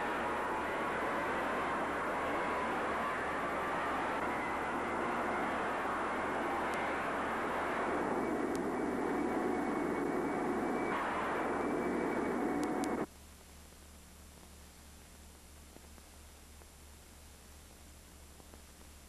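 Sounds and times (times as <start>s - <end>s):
faint hiss: 9.4s - 19.0s.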